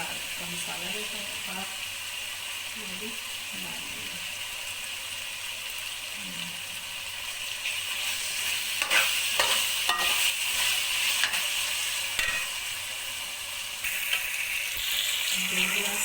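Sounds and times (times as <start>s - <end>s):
spices sizzling in hot oil: 0.0s - 16.0s
spoon scraping a pan: 7.9s - 12.8s.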